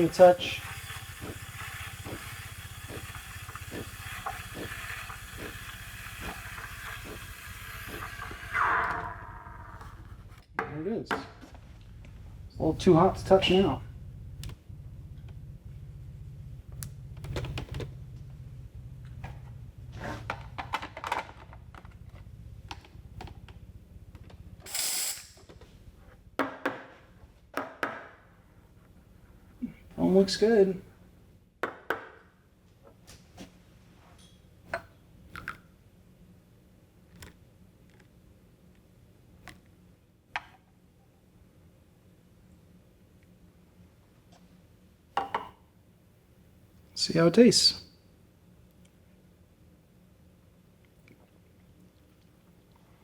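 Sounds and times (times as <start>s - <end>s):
milk pitcher clinking: 0.0s - 8.5s
steam wand hissing: 0.0s - 9.2s, 24.7s - 25.4s
espresso machine humming: 0.0s - 10.3s
pump buzzing: 0.0s - 10.4s.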